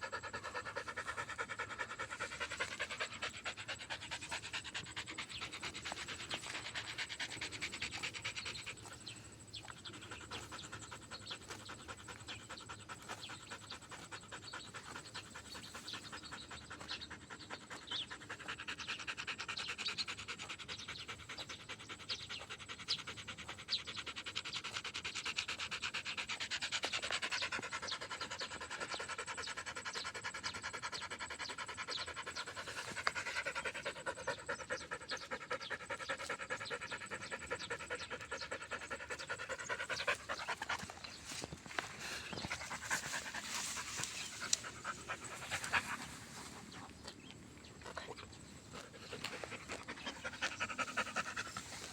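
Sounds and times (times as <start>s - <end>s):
dog panting: 0.0s - 51.9s.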